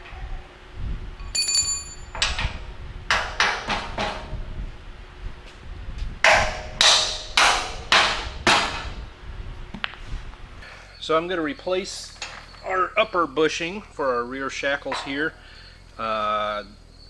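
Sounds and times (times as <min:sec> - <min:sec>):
hammer blows on metal: 0:00.0 - 0:10.8
metal clinking and ringing: 0:01.2 - 0:02.6.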